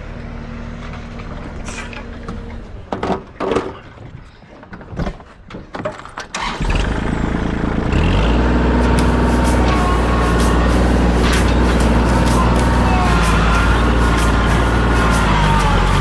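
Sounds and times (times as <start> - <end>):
tractor diesel engine: 0.0 - 3.4, 6.4 - 16.0
knocks and clatters: 8.8 - 16.0.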